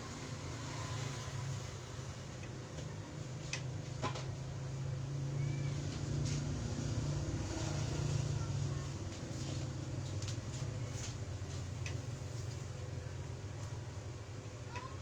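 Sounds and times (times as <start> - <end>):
faint murmur of voices: 7.3 - 11.8.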